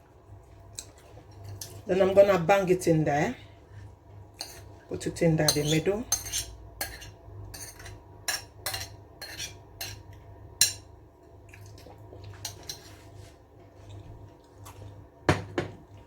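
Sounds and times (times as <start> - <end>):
cutlery clinking against a dish: 4.4 - 4.7, 5.5 - 10.0.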